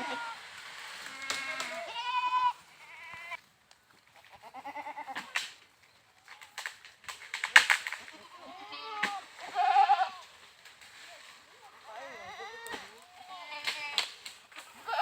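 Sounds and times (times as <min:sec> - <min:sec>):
goats bleating: 0:00.0 - 0:03.4, 0:04.2 - 0:05.3, 0:08.1 - 0:10.3, 0:11.8 - 0:15.0.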